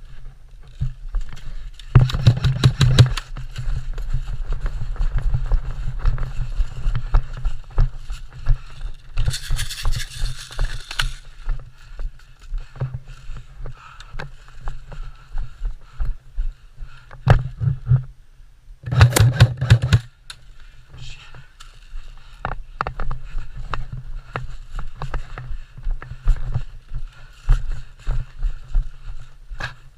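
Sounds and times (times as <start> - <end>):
rustling and low thumps: 0.0 - 15.8.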